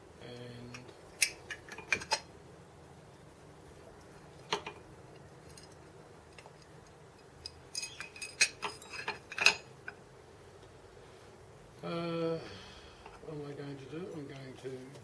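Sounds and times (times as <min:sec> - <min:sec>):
metal tools clinking: 0:05.4 - 0:05.9, 0:07.4 - 0:09.7.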